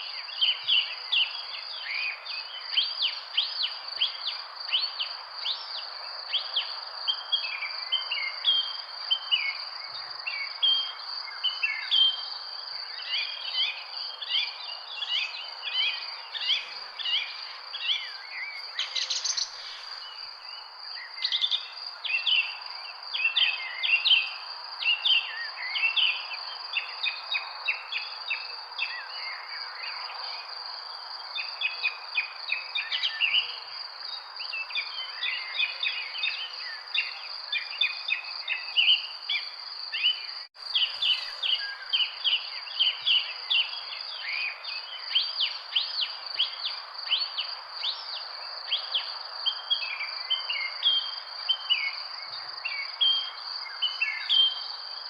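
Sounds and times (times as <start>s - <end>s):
insect trill: 0.0s - 55.0s
birds chirping and singing: 13.0s - 22.6s, 34.8s - 44.6s.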